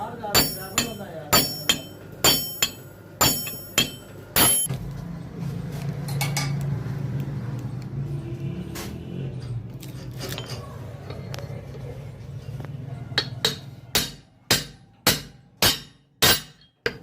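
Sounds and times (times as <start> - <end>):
hammer striking metal: 0.0 - 4.7, 13.2 - 17.0
metal tools clinking: 9.4 - 10.8.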